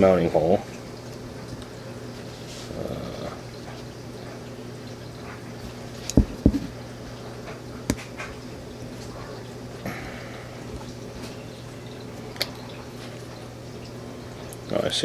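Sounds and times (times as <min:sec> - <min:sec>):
steady low hum: 0:00.0 - 0:15.0
low knocks of metal parts: 0:06.1 - 0:06.8.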